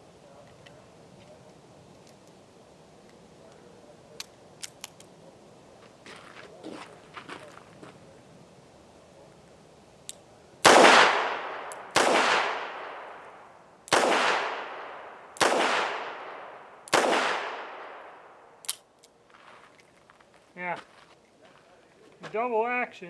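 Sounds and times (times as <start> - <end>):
revolver gunshots echoing: 10.6 - 18.5.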